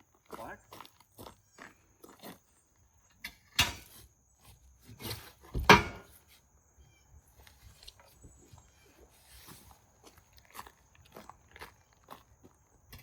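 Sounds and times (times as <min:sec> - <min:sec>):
sharp clunks of parts: 0:03.2 - 0:04.0, 0:05.0 - 0:06.1.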